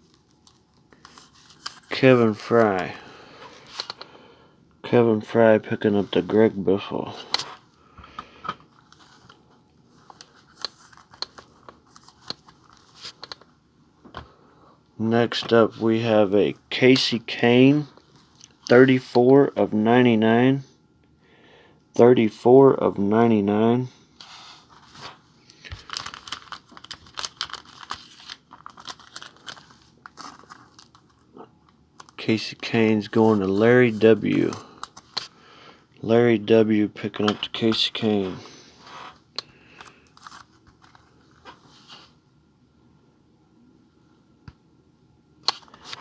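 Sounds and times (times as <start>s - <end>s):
plastic crinkling and rustling: 0.0s - 4.0s, 8.7s - 13.5s, 24.6s - 31.4s, 37.1s - 42.0s
trading cards being handled: 0.1s - 4.1s, 5.6s - 13.5s, 24.2s - 31.3s, 32.0s - 35.4s, 37.0s - 42.1s, 45.4s - 46.0s.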